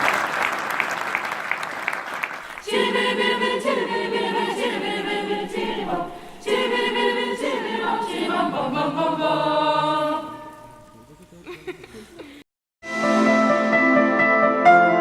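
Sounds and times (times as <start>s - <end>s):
youth choir singing: 2.5s - 11.1s.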